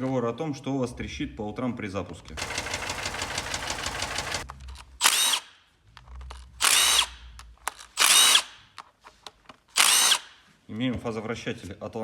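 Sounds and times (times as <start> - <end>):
car engine rattling: 2.4 - 4.5
power drill whirring: 2.4 - 5.5, 6.6 - 8.6, 9.7 - 10.4.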